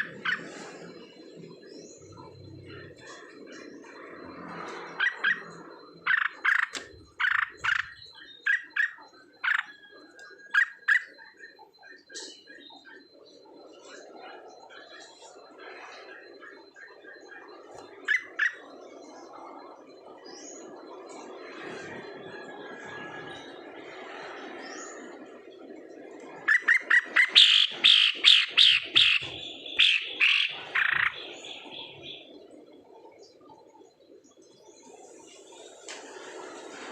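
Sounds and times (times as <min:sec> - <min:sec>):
bird calling downward-sliding notes: 0:26.4 - 0:32.5.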